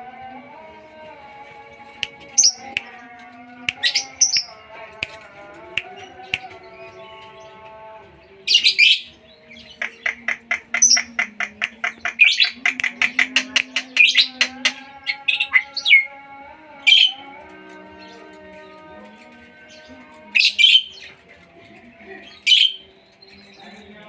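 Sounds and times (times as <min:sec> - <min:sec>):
songbirds chirping and calling: 0:00.0 - 0:24.0
harsh bird call: 0:22.4 - 0:22.9.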